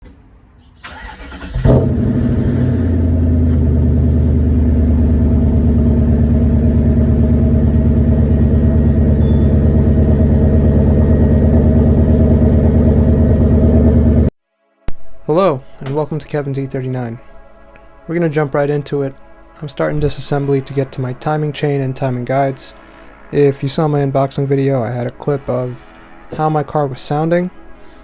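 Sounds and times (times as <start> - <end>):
car engine starting and idling: 0.8 - 14.3
starter motor cranking: 0.9 - 2.0.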